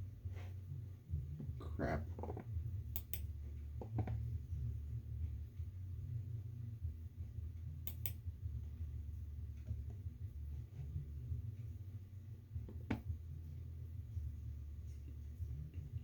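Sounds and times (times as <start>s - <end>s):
low steady hum: 0.0s - 16.0s
sharp clicks in pairs: 2.9s - 3.3s, 7.9s - 8.2s.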